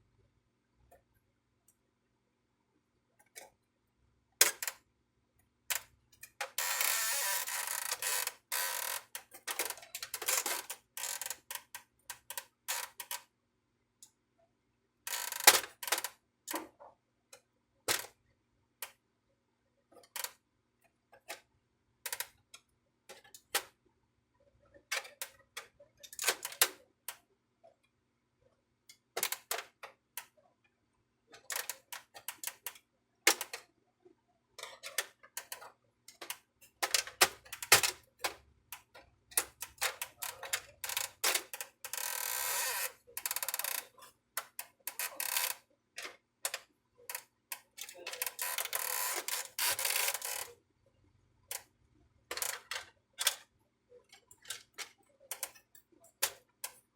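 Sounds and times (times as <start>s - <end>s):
plastic printer parts clicking and rattling: 4.4s - 4.8s, 5.7s - 13.2s, 15.1s - 16.9s, 22.1s - 22.4s, 24.7s - 27.2s, 28.9s - 30.3s, 31.3s - 33.7s, 34.6s - 50.6s, 52.3s - 56.9s.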